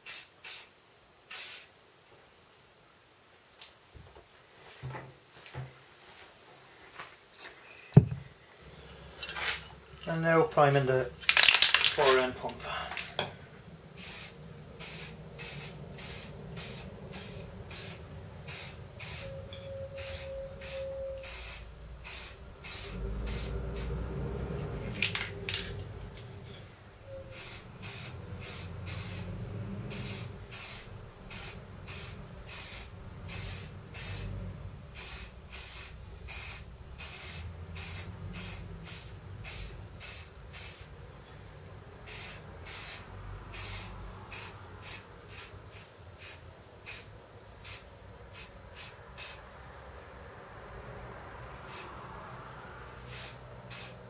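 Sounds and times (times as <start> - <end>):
aerosol can spraying in bursts: 0.0 - 1.7, 14.0 - 19.4, 20.0 - 24.0, 27.3 - 34.4, 35.0 - 40.9, 42.1 - 49.4, 53.0 - 54.0.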